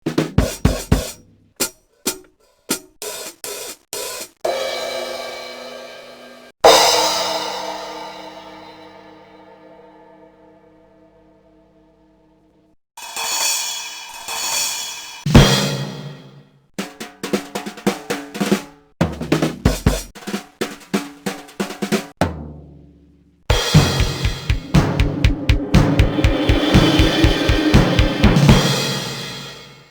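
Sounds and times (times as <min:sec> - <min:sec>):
drum kit fills: 0:00.0 - 0:06.0, 0:06.6 - 0:09.0, 0:13.0 - 0:22.9, 0:23.5 - 0:29.9
drum beat with cymbals: 0:00.0 - 0:08.8, 0:13.0 - 0:22.8, 0:23.5 - 0:29.9
cymbal crash ringing: 0:06.7 - 0:10.9, 0:23.5 - 0:29.9
deep drum hits: 0:23.5 - 0:29.7
sharp drum hits: 0:23.5 - 0:29.9
short cymbal hits: 0:23.5 - 0:29.9.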